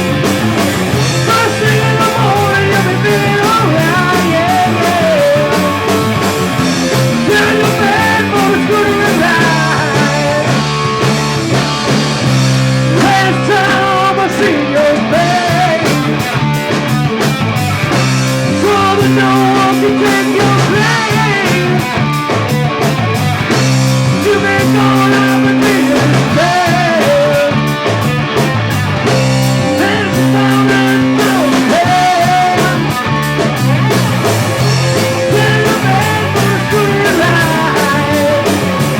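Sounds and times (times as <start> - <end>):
rock band playing: 0.0 - 38.9
person singing: 1.2 - 6.2, 7.0 - 11.1, 12.9 - 16.4, 18.4 - 22.1, 24.1 - 27.7, 29.6 - 38.9.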